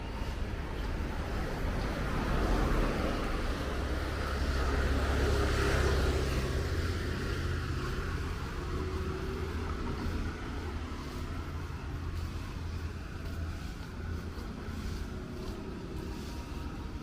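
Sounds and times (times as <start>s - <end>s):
vehicle passing on wet street: 0.0s - 17.0s.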